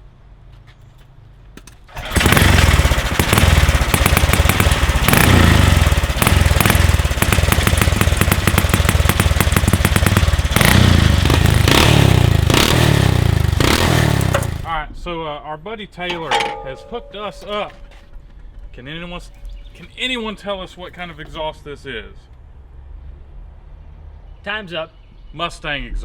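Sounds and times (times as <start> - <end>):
engine starting and revving: 1.9 - 14.8.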